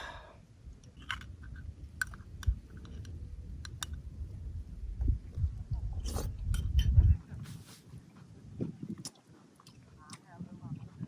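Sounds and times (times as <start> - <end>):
low rumble: 0.0 - 7.5.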